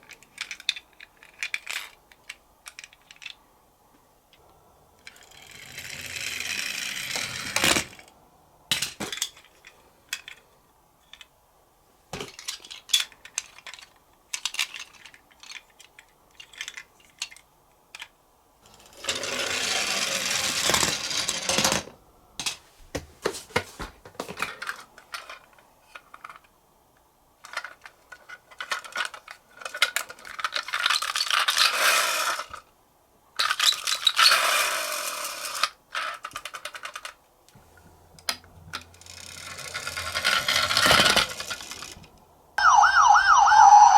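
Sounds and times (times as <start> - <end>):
toy car rolling and rattling: 0.0 - 3.4, 5.0 - 8.1, 12.2 - 22.5, 24.3 - 26.6, 27.4 - 32.7, 33.4 - 37.3, 38.2 - 42.2.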